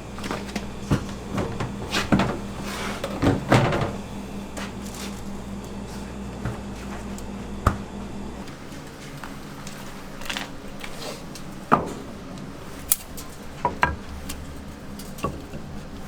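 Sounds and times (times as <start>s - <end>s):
kitchen items knocking and clattering: 0.0s - 5.3s
steady machine hum: 0.0s - 16.0s.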